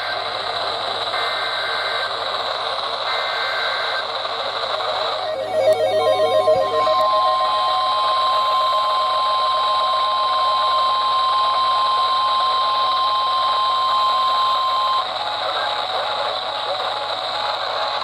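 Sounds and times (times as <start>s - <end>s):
loud steady high alarm tone: 5.2s - 15.3s.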